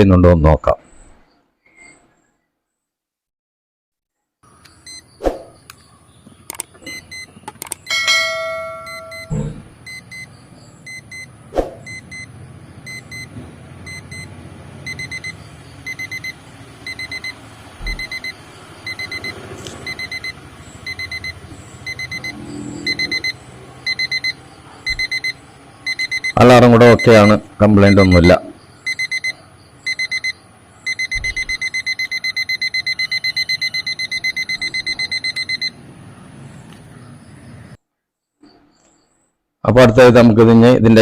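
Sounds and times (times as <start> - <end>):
alarm clock rapid high beeps: 4.8 - 5.0, 6.5 - 35.8
sharp clicks: 6.4 - 7.9
metallic clink: 7.9 - 9.5.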